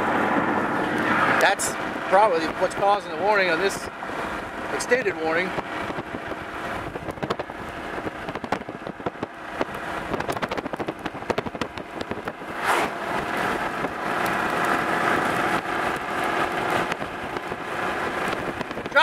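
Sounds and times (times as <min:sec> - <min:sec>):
heavy rain on car roof: 0:13.2 - 0:19.0.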